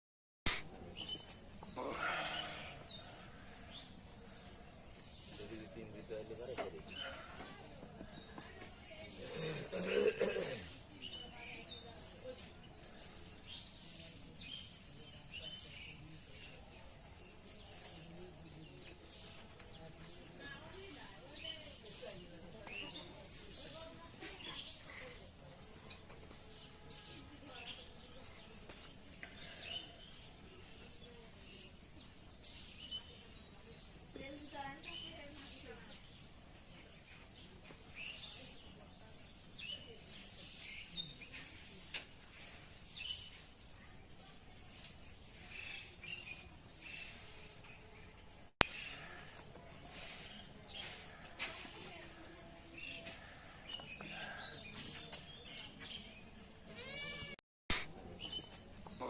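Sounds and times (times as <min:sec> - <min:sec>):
faint outdoor background noise: 0:00.5 - 0:59.0
small birds chirping: 0:00.5 - 0:59.0.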